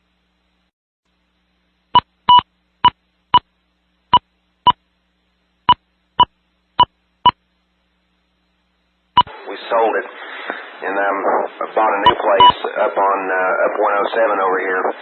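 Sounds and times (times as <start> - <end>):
short electronic beeps: 2.0 - 3.0.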